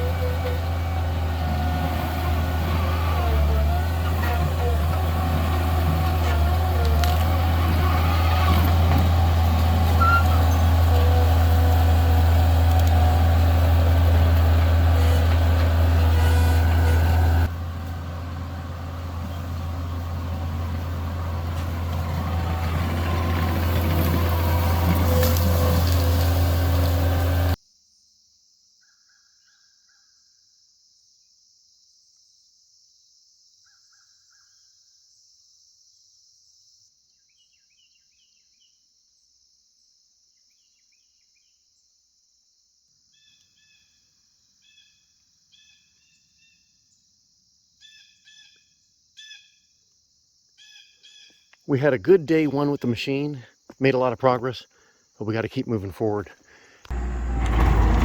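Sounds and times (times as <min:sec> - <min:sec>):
diesel engine running: 0:00.0 - 0:27.6, 0:56.8 - 0:58.0
short bird calls: 0:09.9 - 0:11.2.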